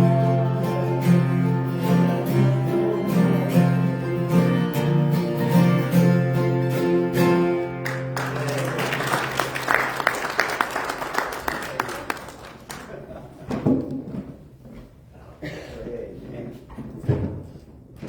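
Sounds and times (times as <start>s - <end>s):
congregation applauding: 7.6s - 13.0s.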